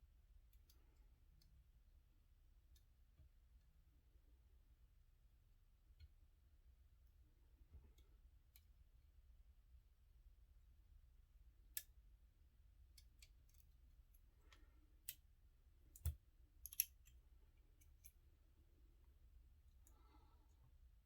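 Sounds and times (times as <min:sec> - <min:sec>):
lock-picking tools clicking: 0:15.9 - 0:17.2.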